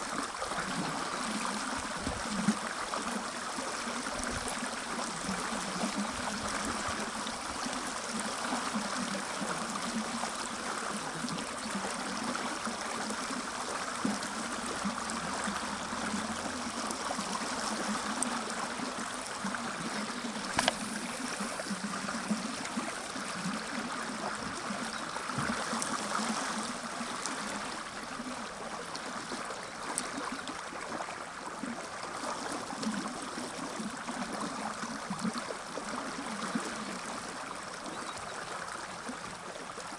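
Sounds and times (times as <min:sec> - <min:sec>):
river flowing over stones: 0:00.0 - 0:39.9
short click: 0:20.5 - 0:20.8.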